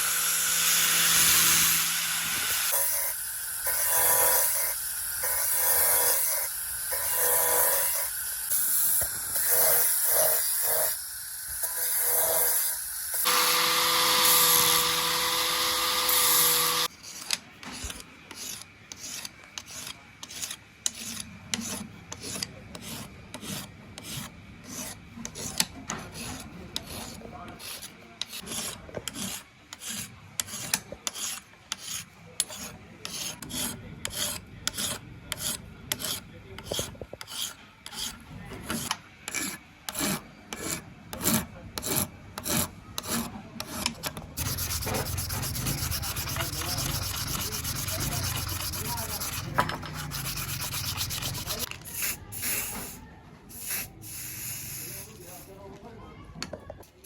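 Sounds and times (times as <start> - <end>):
small electric tool whining: 0.0 - 16.9, 44.4 - 51.7
abrasive rubbing on metal: 44.4 - 53.0.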